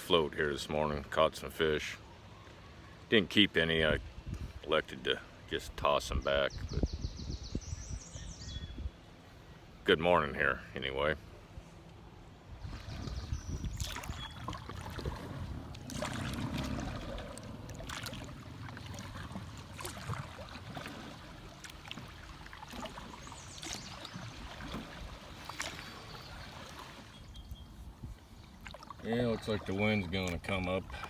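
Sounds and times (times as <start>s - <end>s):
paddle splashing water: 12.5s - 31.0s
low rumble: 14.8s - 20.5s.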